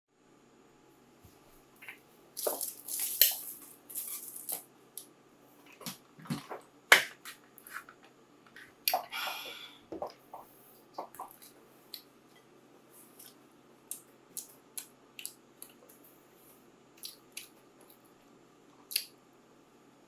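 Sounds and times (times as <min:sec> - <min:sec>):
food packaging crinkling: 0:01.8 - 0:04.7.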